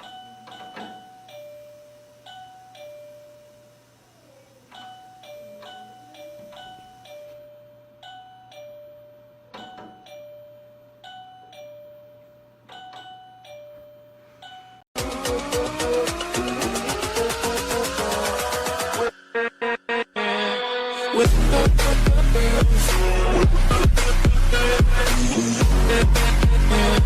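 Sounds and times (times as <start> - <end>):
two-tone doorbell chime: 0.0 - 3.8, 4.7 - 14.9.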